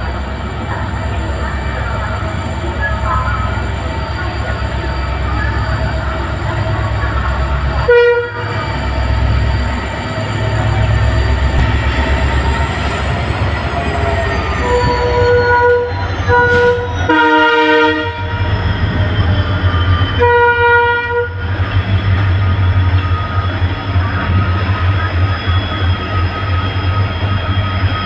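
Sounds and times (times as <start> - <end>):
diesel locomotive engine hum: 0.0 - 28.0
locomotive horn blasts: 7.8 - 8.7, 14.6 - 18.4, 20.2 - 21.5.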